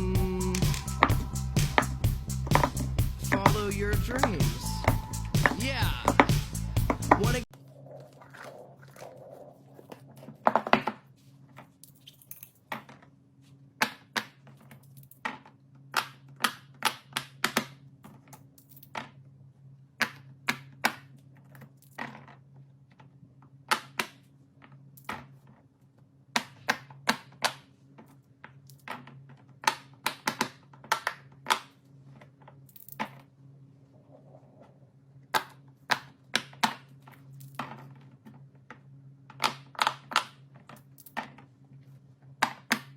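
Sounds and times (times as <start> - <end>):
steady low hum: 0.0 - 7.5.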